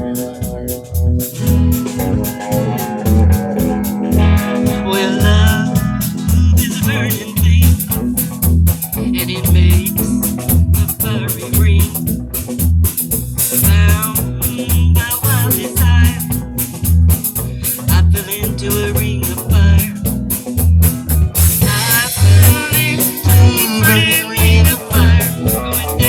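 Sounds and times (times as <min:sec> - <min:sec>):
bass: 0:00.0 - 0:26.0
drum beat: 0:00.0 - 0:26.0
person singing: 0:01.5 - 0:12.2, 0:13.5 - 0:16.4, 0:17.5 - 0:20.2, 0:21.6 - 0:26.0.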